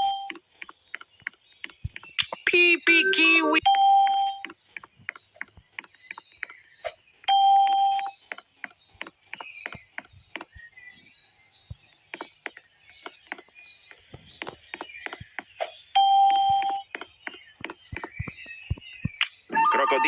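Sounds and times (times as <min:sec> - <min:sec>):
electronic beep tone: 0:00.0 - 0:00.4, 0:02.4 - 0:04.5, 0:16.0 - 0:16.9, 0:19.5 - 0:20.0.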